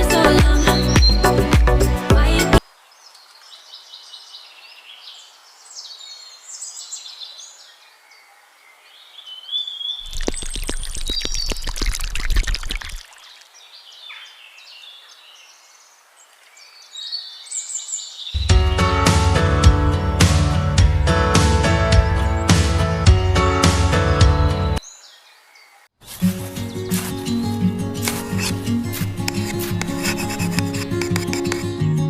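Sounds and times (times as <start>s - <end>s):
music: 0.0s - 2.6s, 18.4s - 24.8s, 26.2s - 32.0s
birds chirping: 0.2s - 1.5s, 2.9s - 18.6s, 24.3s - 31.7s
faint outdoor hiss: 2.6s - 11.4s, 13.0s - 18.3s.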